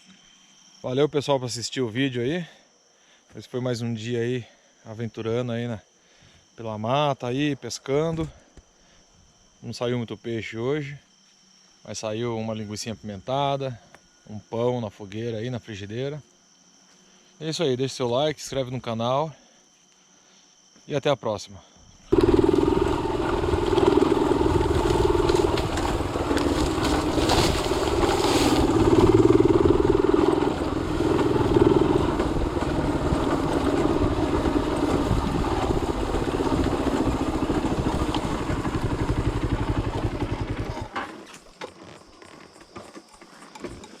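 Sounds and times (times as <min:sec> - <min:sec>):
motorcycle engine running: 0:22.1 - 0:40.9.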